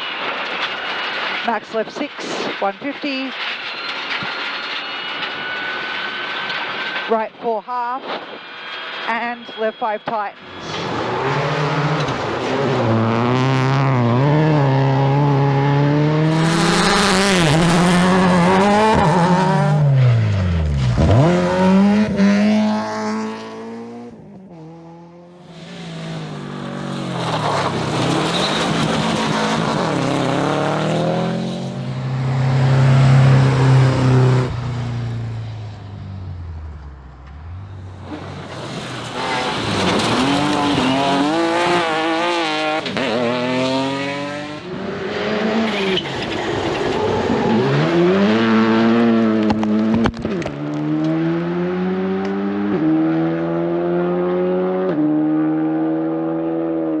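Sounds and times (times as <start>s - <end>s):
rally car engines revving: 10.4s - 57.0s
car passing by: 15.9s - 49.6s.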